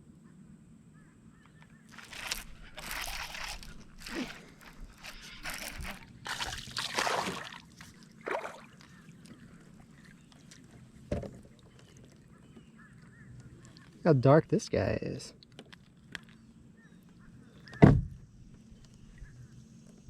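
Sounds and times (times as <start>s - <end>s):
water splashing and sloshing: 1.9s - 14.0s.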